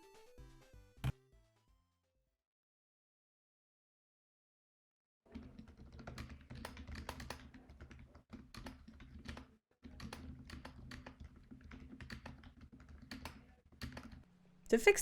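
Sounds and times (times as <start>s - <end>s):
quiet mechanical keyboard typing: 5.3s - 14.3s.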